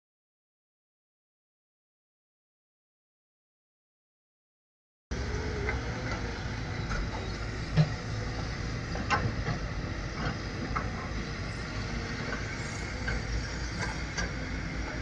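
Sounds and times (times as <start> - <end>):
diesel engine running: 5.1 - 15.0.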